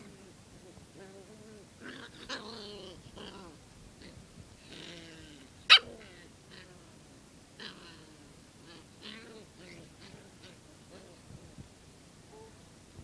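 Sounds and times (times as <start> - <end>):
puppy growling: 0.0 - 7.0, 7.6 - 11.4
puppy bark: 5.7 - 6.0.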